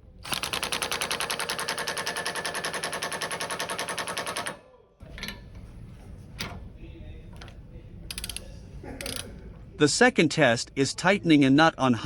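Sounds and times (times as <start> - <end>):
impact wrench rattling: 8.1 - 9.3.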